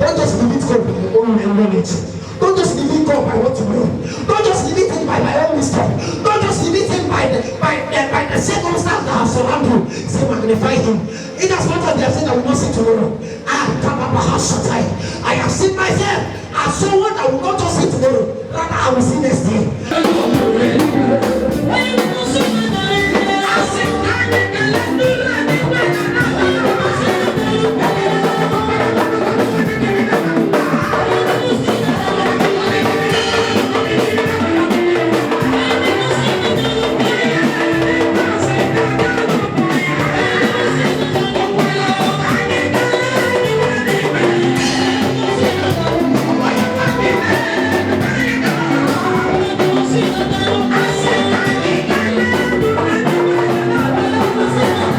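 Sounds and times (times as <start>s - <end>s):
worship band music: 0.0s - 54.9s
guitar: 19.5s - 54.9s
drum kit: 19.9s - 54.9s.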